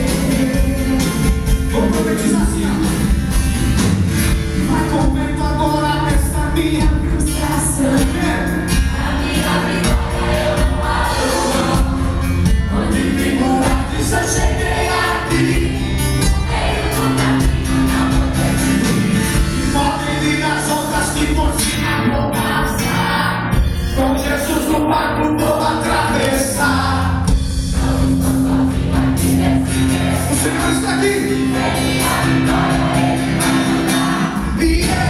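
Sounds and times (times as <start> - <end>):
group singing worship song: 0.0 - 3.2, 4.7 - 35.0
band with steady beat: 0.0 - 35.0.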